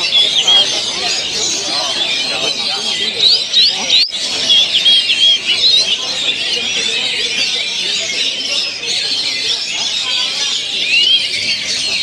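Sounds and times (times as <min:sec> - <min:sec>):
chorus of songbirds singing: 0:00.0 - 0:12.0
murmur of voices: 0:00.0 - 0:12.0.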